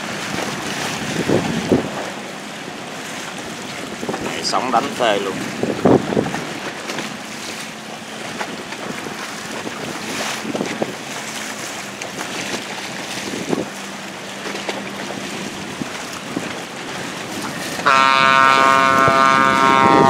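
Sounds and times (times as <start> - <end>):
boat engine hum: 0.0 - 20.0
water splashes: 0.0 - 20.0
waves rushing and slapping: 0.0 - 20.0
wind buffeting microphone: 0.0 - 20.0.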